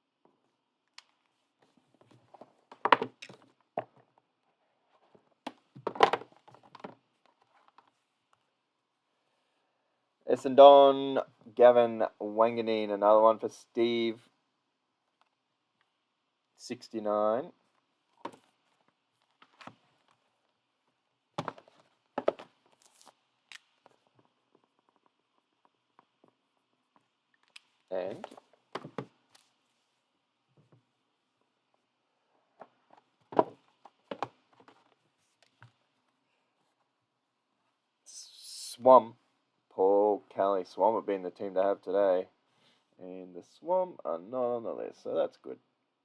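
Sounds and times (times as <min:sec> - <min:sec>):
cards being handled: 0:21.4 - 0:24.0.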